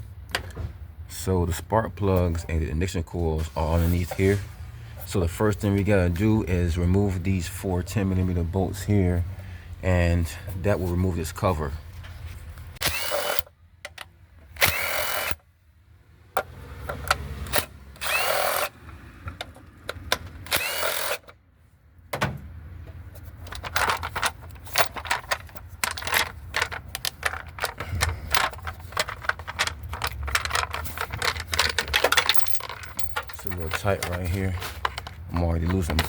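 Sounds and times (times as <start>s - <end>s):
power driver spinning: 12.8s - 13.5s, 14.6s - 15.4s, 17.5s - 19.4s, 20.0s - 21.4s, 23.5s - 36.0s
socket and bolts rattling: 22.1s - 36.0s.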